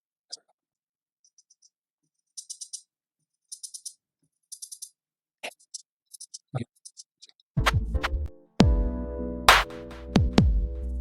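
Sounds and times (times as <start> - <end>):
drum machine beat with bass: 7.6 - 8.9, 9.5 - 11.0.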